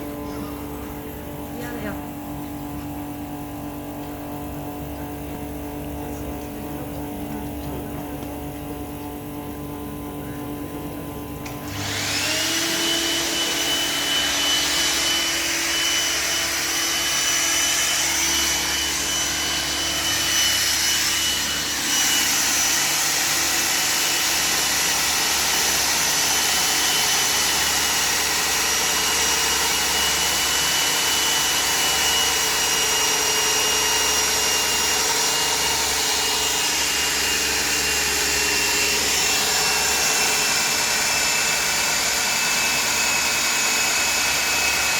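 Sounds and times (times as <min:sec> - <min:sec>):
core drill whining: 0:11.4 - 0:44.9.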